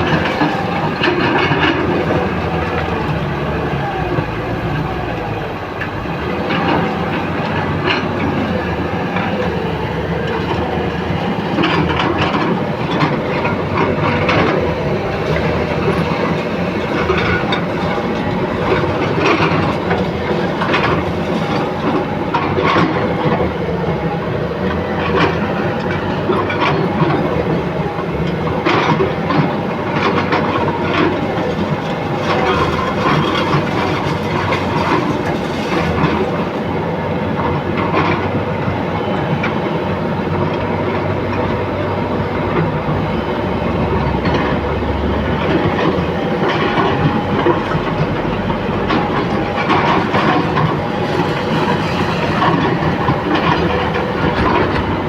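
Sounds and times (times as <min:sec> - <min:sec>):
loud mechanical rumble: 0:00.0 - 0:55.0
clanks and rattles: 0:28.2 - 0:36.7, 0:45.3 - 0:55.0.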